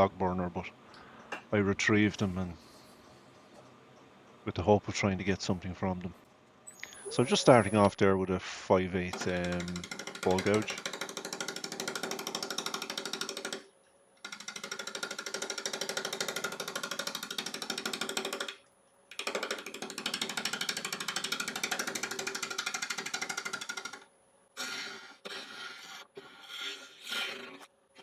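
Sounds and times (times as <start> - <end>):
lathe gouge chattering on wood: 9.1 - 13.6, 14.2 - 18.6, 19.2 - 24.0
tool scraping wood: 9.1 - 13.6, 14.3 - 18.6, 24.6 - 28.0.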